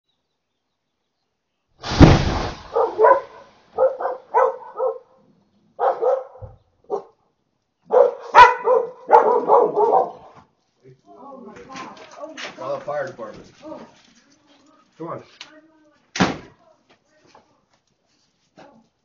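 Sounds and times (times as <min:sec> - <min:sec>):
explosion blast with deep rumble: 0:01.8 - 0:03.0
sharp crack: 0:01.8 - 0:04.1, 0:16.1 - 0:16.5
dog barking: 0:02.7 - 0:05.2, 0:05.8 - 0:07.2, 0:07.9 - 0:10.4.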